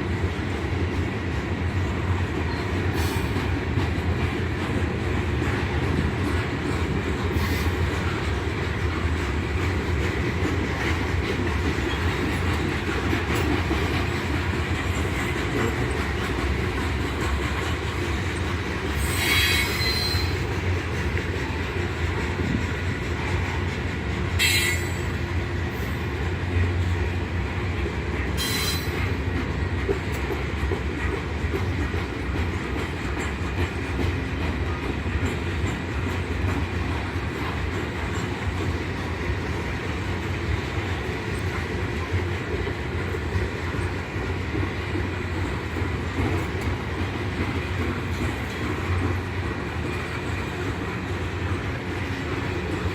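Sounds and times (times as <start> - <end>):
train wheels rumbling on rail: 0.0 - 52.9
high wheel squeals: 19.0 - 20.5.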